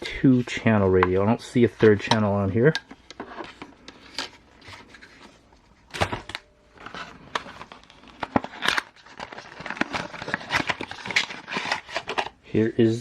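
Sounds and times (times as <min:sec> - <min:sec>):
plastic packaging crinkling: 0:06.2 - 0:12.4.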